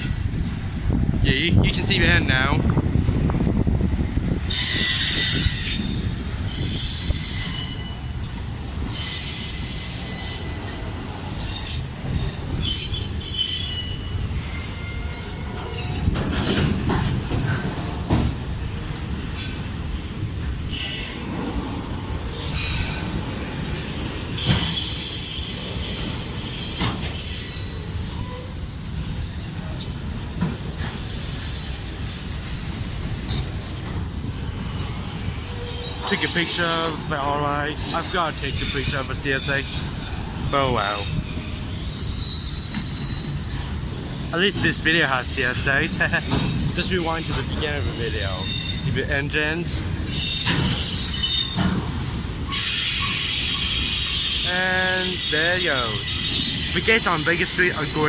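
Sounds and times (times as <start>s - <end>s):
high-pitched wheel squeal: 4.5s - 8.2s, 8.9s - 16.0s, 20.6s - 21.6s, 24.4s - 28.9s, 29.8s - 33.0s, 34.6s - 37.0s, 40.5s - 44.0s, 52.5s - 58.0s.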